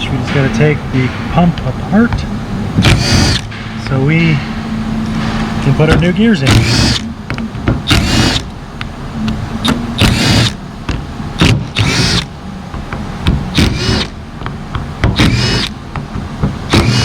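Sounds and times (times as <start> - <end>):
cordless power tool spinning bolts: 6.5 - 7.0, 11.4 - 12.3, 13.5 - 14.1, 15.2 - 15.7, 16.7 - 17.0.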